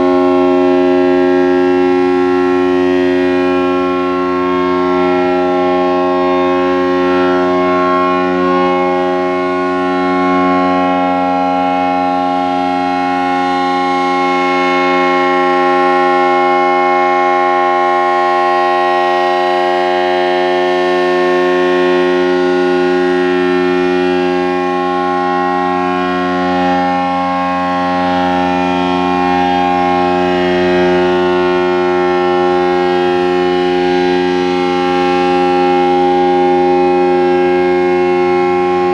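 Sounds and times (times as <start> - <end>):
warning siren steady tone: 0.0 - 38.9.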